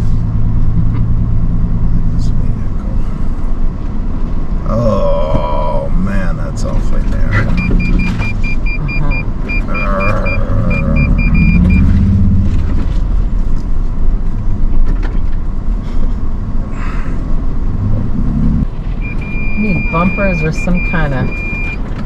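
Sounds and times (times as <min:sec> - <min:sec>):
engine and tyre rumble: 0:00.0 - 0:22.0
rapid electronic warning beeps: 0:07.6 - 0:11.9, 0:19.0 - 0:21.8.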